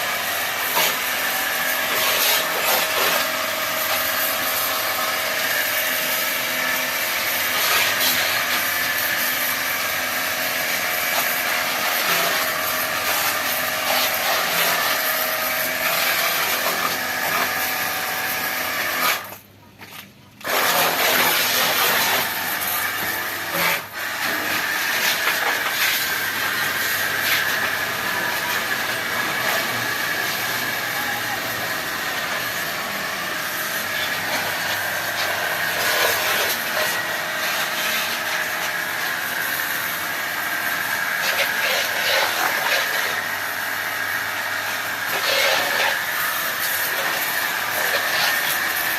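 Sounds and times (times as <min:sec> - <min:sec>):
pressure washer motor whining: 0:00.0 - 0:19.5, 0:20.4 - 0:48.9.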